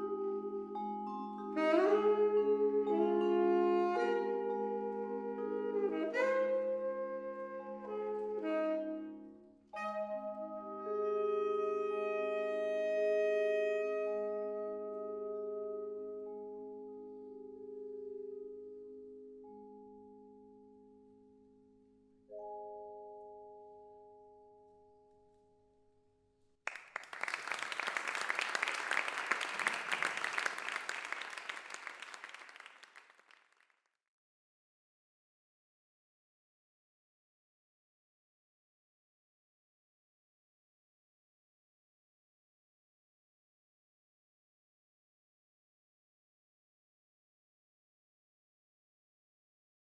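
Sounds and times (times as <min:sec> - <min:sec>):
vibraphone chords: 0:00.0 - 0:06.3
saxophone: 0:00.0 - 0:18.3, 0:27.2 - 0:33.3
audience applauding: 0:26.7 - 0:33.6.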